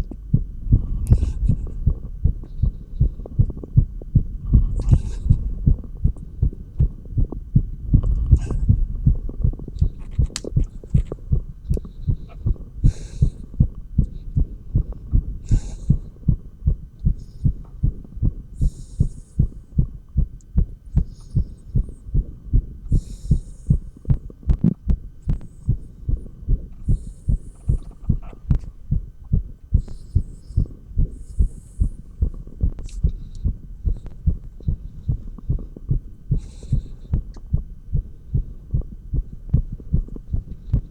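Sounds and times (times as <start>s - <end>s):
heartbeat through stethoscope: 0.0s - 40.9s.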